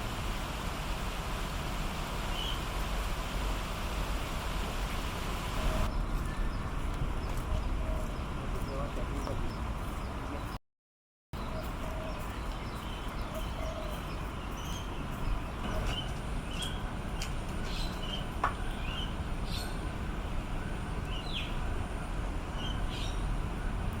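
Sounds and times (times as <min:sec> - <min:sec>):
urban background rumble: 0:00.0 - 0:10.6, 0:11.4 - 0:24.0
small birds chirping: 0:05.8 - 0:10.6, 0:11.4 - 0:19.9, 0:20.6 - 0:21.6, 0:22.6 - 0:23.4.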